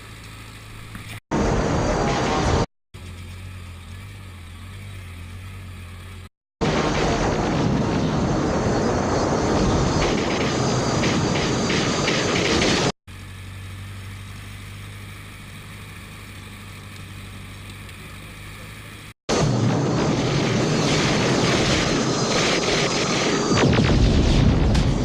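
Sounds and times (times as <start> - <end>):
loud vehicle engine and road noise: 0.0 - 19.1
quiet steady engine hum: 3.0 - 6.3, 13.1 - 19.2.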